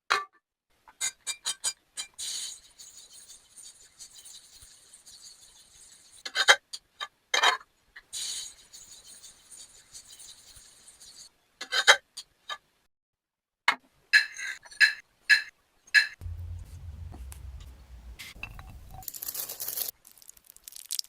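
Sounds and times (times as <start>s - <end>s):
low hum: 16.2s - 19.9s
scraping rustle: 16.2s - 19.9s.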